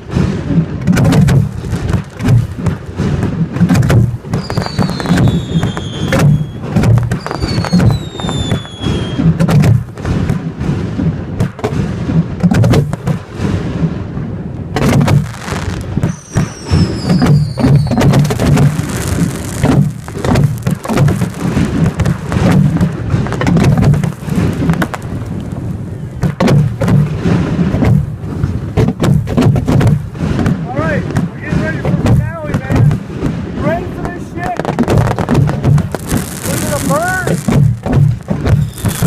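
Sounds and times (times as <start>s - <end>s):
firework shell launches and bursts: 0.0s - 39.0s
falling firework whistle: 4.3s - 9.4s, 15.5s - 21.8s, 38.4s - 39.0s.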